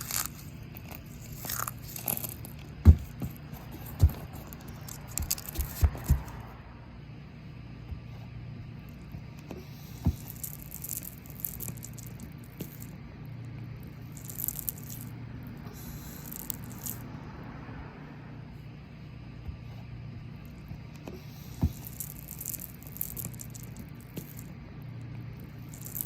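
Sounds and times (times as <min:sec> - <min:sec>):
cookies crunching in a hand: 0:00.0 - 0:06.4, 0:09.8 - 0:13.0, 0:13.8 - 0:15.1, 0:15.8 - 0:17.1, 0:21.4 - 0:26.0
steady low hum: 0:00.0 - 0:26.0.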